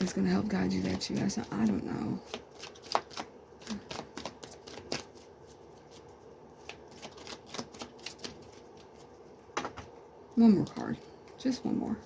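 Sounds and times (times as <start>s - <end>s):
cards being shuffled: 0.6s - 9.8s.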